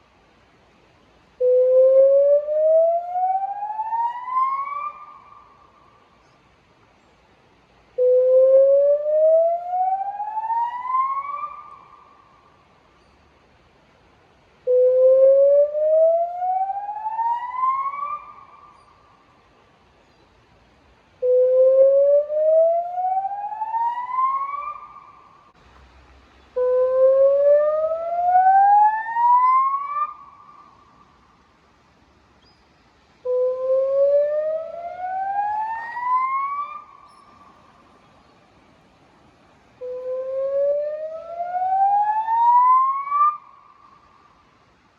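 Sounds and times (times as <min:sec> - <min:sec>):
rising whoop warning siren: 0:22.1 - 0:24.8, 0:26.7 - 0:30.1, 0:33.7 - 0:36.8, 0:40.1 - 0:43.4.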